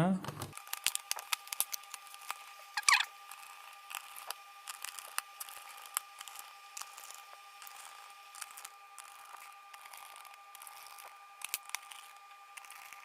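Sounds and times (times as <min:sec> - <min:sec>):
short scraping squeak: 0:02.8 - 0:03.1.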